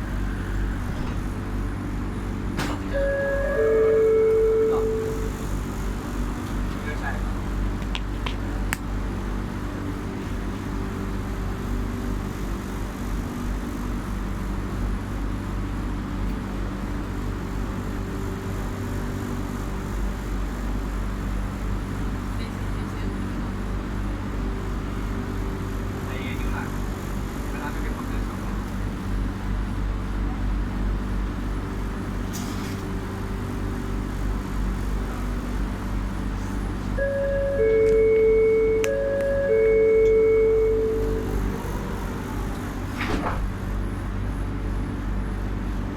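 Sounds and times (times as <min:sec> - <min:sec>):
train interior rumble: 0:00.0 - 0:45.9
two-note electronic chime: 0:02.9 - 0:05.5, 0:37.0 - 0:41.9
steady tonal hum: 0:02.9 - 0:06.2, 0:36.9 - 0:42.9.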